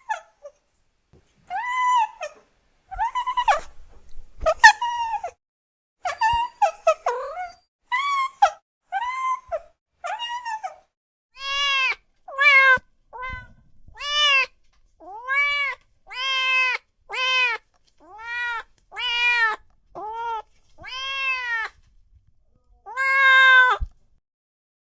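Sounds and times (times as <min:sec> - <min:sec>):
cat meowing: 0:09.0 - 0:10.8, 0:11.4 - 0:21.8, 0:22.8 - 0:23.8.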